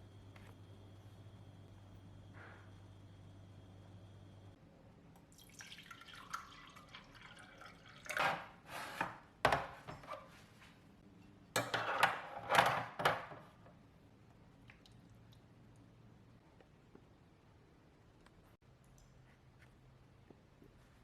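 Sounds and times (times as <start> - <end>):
tap water running: 5.2 - 9.0
kitchenware clicks and knocks: 8.2 - 10.3, 11.6 - 13.6.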